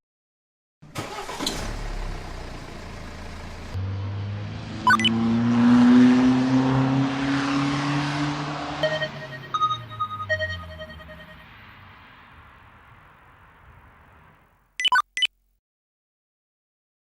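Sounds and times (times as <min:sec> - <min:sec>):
engine starting and revving: 0:00.8 - 0:11.2.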